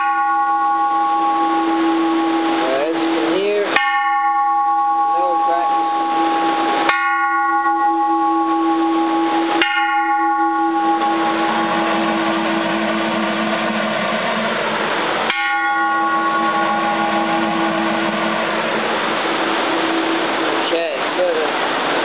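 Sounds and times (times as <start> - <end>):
temple bell struck with wooden striker: 0.0 - 14.0, 15.3 - 20.2
heavy rain on a tin roof: 18.5 - 22.0.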